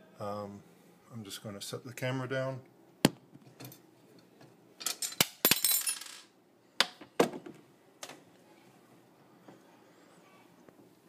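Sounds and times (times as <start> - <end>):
clinking rattle: 4.8 - 6.3.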